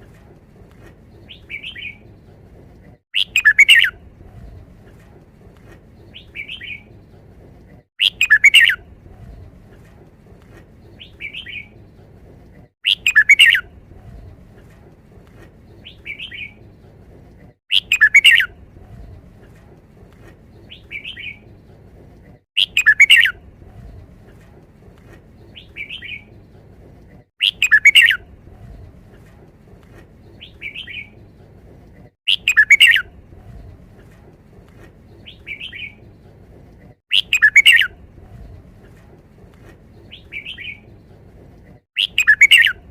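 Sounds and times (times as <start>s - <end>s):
bulbul singing: 12.8s - 13.7s, 17.7s - 18.5s, 32.3s - 33.1s, 42.0s - 42.8s.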